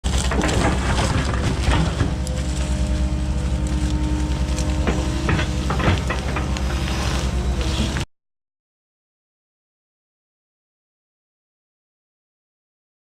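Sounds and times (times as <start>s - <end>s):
diesel engine running: 0.0s - 8.1s.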